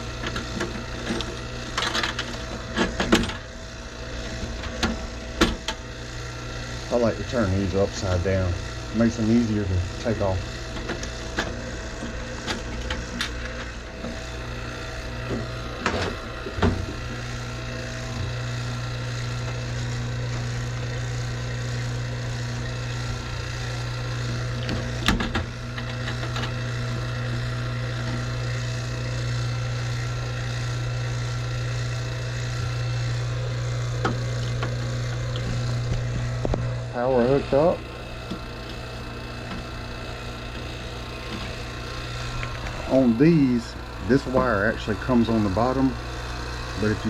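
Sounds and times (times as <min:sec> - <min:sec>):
vacuum pump humming: 0:00.0 - 0:47.0
sharp clicks and knocks: 0:00.2 - 0:03.5, 0:04.3 - 0:05.8, 0:15.2 - 0:17.0, 0:24.2 - 0:26.6, 0:34.0 - 0:36.7.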